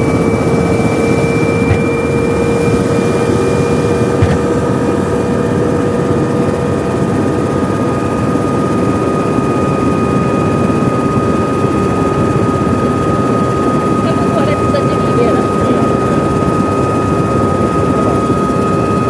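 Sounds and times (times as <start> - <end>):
helicopter engine and rotor rumble: 0.0 - 19.0.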